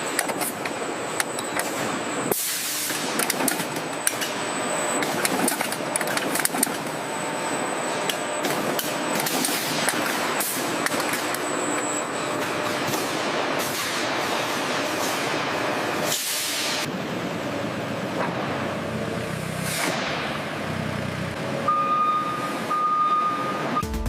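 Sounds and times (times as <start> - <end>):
sharp machine clicks and knocks: 0.0 - 1.8, 2.9 - 4.4, 5.0 - 7.0, 8.0 - 11.5
factory machinery hiss and clatter: 0.0 - 21.6.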